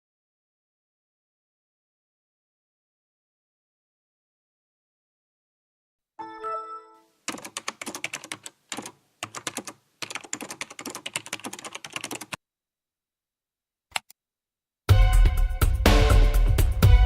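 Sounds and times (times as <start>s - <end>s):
brief chime-like tone: 6.2s - 7.1s
rapid clicking bursts: 7.3s - 12.4s.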